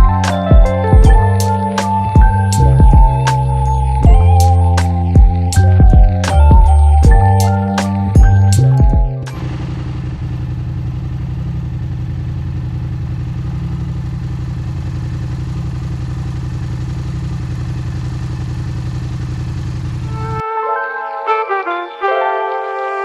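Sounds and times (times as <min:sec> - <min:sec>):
motorcycle engine idling: 0:04.0 - 0:20.4.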